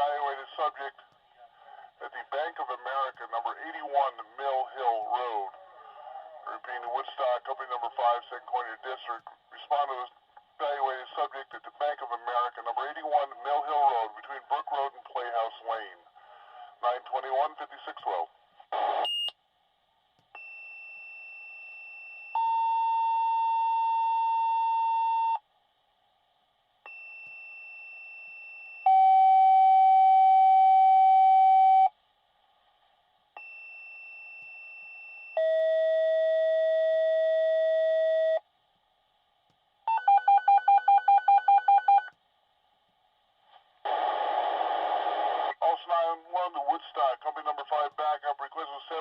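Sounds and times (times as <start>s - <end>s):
dispatcher speaking on radio: 0.0s - 18.3s, 45.4s - 49.0s.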